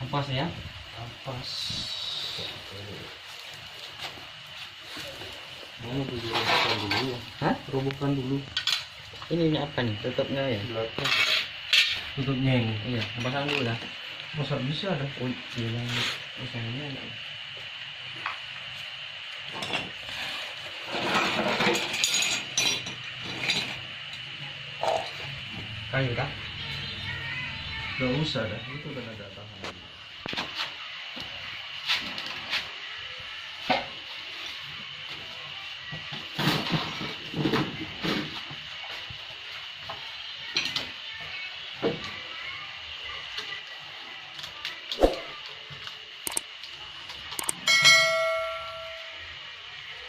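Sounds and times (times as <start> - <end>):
metallic clicks and rattles of tools: 46.3 - 46.5, 47.4 - 47.6
steady high whine: 47.3 - 50.0.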